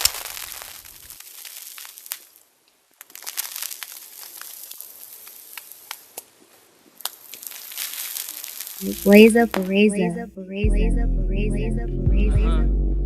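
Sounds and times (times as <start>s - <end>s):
crackling with clicks and pops: 0.0s - 10.1s.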